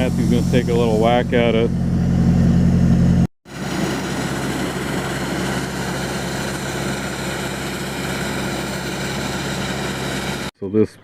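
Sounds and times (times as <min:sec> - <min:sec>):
sandblaster hissing: 0:00.0 - 0:01.1, 0:03.5 - 0:10.5
engine humming: 0:00.0 - 0:10.5.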